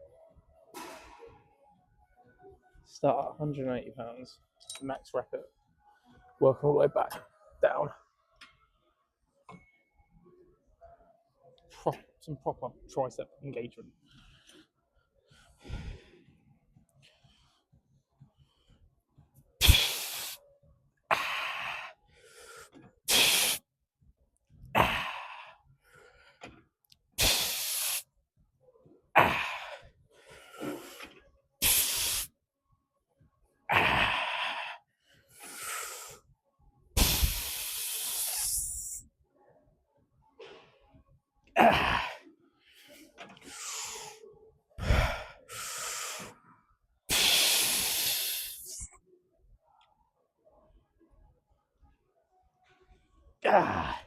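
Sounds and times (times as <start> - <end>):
man breathing hard: 14.2 - 17.8, 19.6 - 20.4, 21.1 - 23.6, 24.7 - 26.6, 27.2 - 28.0, 29.2 - 32.3, 33.7 - 36.3, 37.0 - 39.0, 41.6 - 46.4, 47.1 - 48.9.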